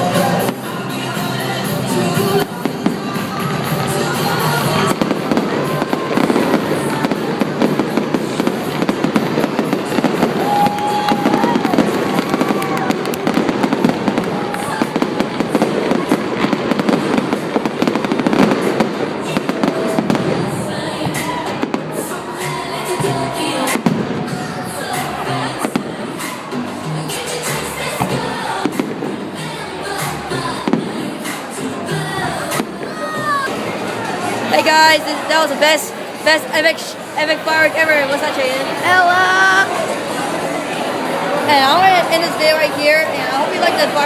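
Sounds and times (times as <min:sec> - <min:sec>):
pop music over loudspeakers: 0:00.0 - 0:44.0
fireworks bangs and crackles: 0:00.2 - 0:33.8.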